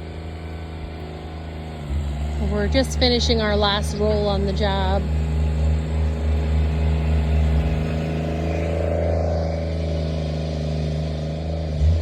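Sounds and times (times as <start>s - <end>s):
road roller engine running: 0.0s - 12.0s.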